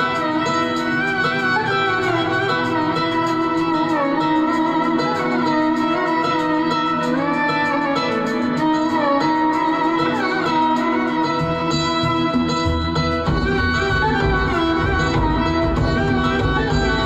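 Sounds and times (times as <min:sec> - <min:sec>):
sliding plucked string melody: 0:00.0 - 0:17.0
steady bass: 0:12.8 - 0:17.0.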